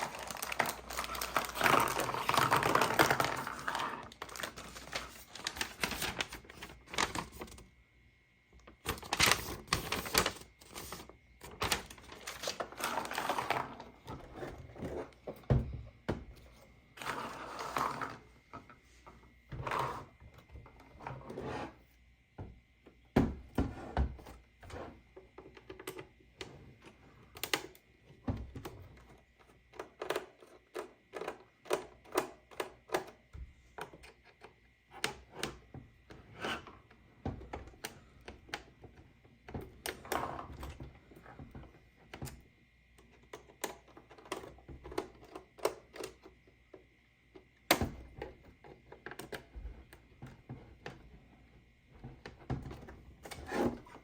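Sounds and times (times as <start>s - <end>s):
packaging rustling: 0.0s - 7.6s, 8.8s - 13.8s.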